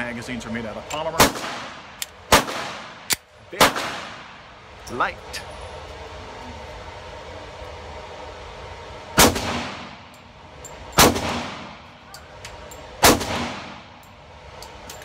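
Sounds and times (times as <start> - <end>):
pistol shots echoing: 1.2 - 2.9, 3.6 - 4.2, 13.0 - 13.8.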